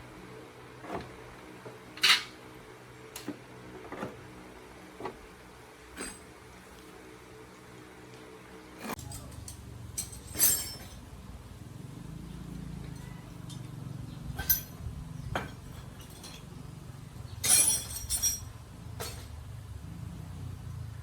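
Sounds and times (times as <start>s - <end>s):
sharp clinks and knocks: 8.9s - 11.1s, 17.4s - 19.3s.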